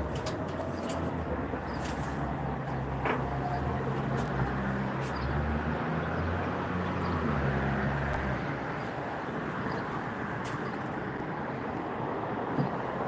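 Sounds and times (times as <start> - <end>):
engine humming: 0.0 - 13.0.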